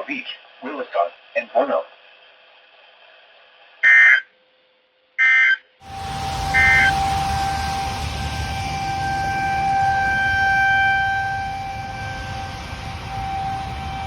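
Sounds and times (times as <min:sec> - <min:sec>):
tornado siren steady tone: 0:03.8 - 0:04.3, 0:05.2 - 0:14.0
buzzy digital data bursts: 0:05.8 - 0:14.0
wind rumble: 0:05.8 - 0:14.0.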